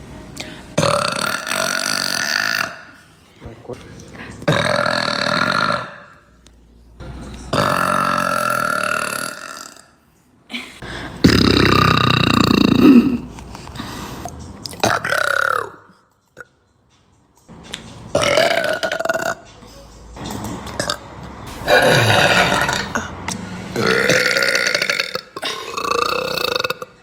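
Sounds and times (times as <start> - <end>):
girl burping: 11.2 - 13.3, 18.2 - 19.4, 21.6 - 23.1, 23.8 - 27.0.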